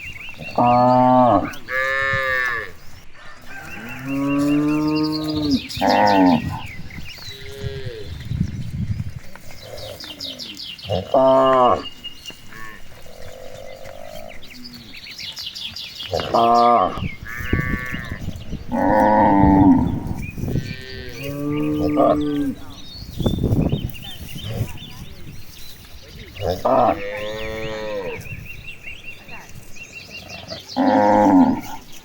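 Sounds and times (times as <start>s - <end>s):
cattle mooing: 0.4s - 2.8s, 3.5s - 6.7s, 9.7s - 11.9s, 16.1s - 22.8s, 26.4s - 28.2s, 30.5s - 31.9s.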